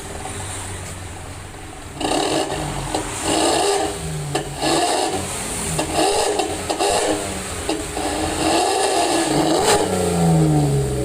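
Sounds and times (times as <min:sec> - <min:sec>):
car engine idling: 0:00.0 - 0:11.0
raspy exhaust snarl: 0:01.9 - 0:11.0.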